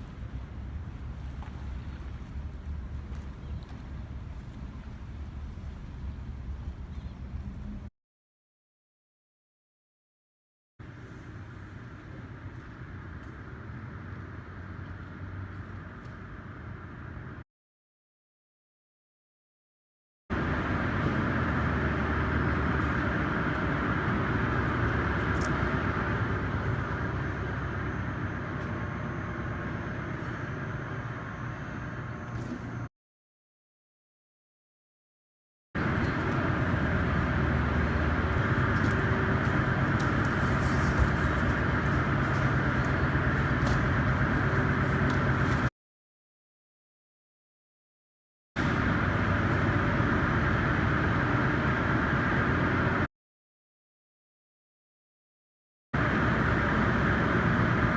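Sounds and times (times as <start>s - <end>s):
steady machinery noise: 20.4s - 32.9s, 35.8s - 45.7s, 48.6s - 53.0s, 56.0s - 57.9s.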